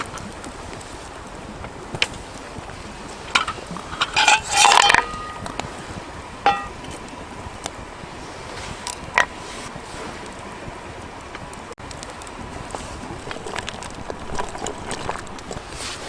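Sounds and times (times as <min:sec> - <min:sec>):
metal cookware clinking: 0:03.3 - 0:05.8, 0:06.4 - 0:07.0.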